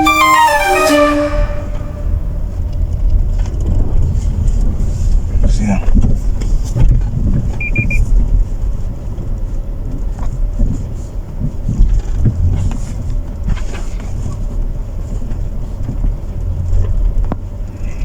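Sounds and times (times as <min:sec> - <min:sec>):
high electronic beeps: 0:00.0 - 0:02.1
vehicle rumble: 0:02.0 - 0:18.0.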